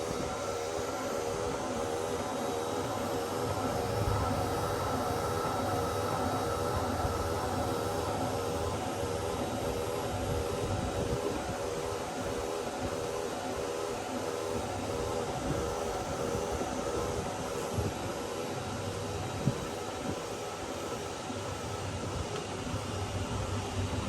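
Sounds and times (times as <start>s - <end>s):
steady mechanical drone: 0.0s - 22.0s.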